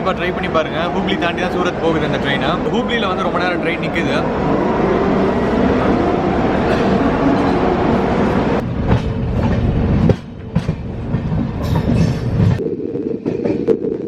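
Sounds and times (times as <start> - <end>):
train wheels clacking on rails: 8.5 - 12.6.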